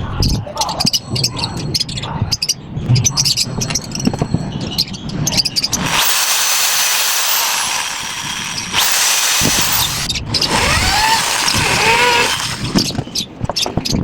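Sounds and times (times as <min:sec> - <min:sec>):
power tool whirring: 0:05.5 - 0:13.1.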